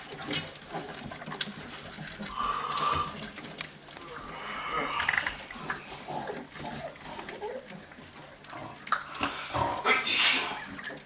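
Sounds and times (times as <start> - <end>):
puppies whining and squeaking: 4.2 - 8.4.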